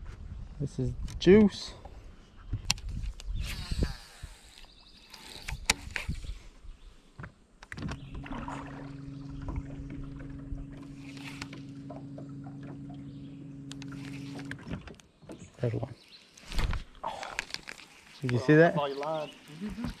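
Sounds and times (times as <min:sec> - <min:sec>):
electric boat motor humming: 0:03.4 - 0:06.2, 0:07.6 - 0:16.4.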